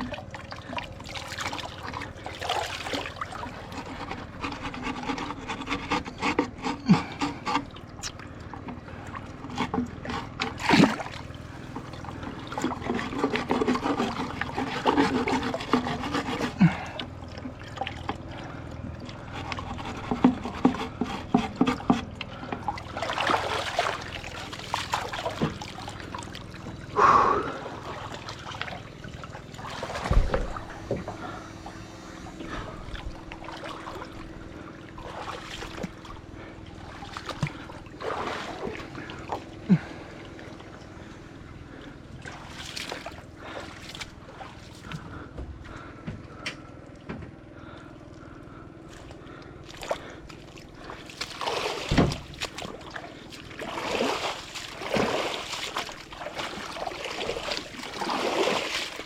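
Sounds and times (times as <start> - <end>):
water splashing and trickling: 0.0 - 46.0, 46.8 - 59.0
scrubbing against a boat hull: 1.0 - 26.6, 48.9 - 59.0.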